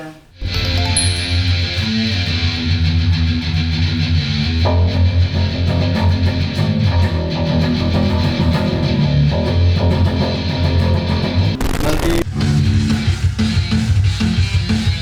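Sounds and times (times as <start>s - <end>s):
heavy bass line: 0.4s - 15.0s
heavy metal guitar riff: 1.5s - 15.0s
burst of noise: 11.6s - 12.3s.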